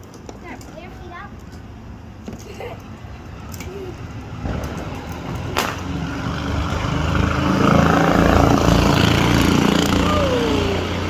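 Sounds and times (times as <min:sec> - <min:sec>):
vehicle driving past: 0:04.2 - 0:11.0.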